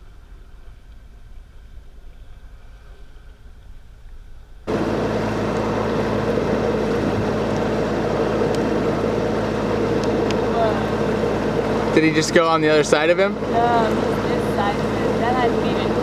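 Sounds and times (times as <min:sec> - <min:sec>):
low hum: 0:00.0 - 0:16.0
water and wind noise: 0:00.0 - 0:16.0
boat engine droning: 0:04.5 - 0:16.0.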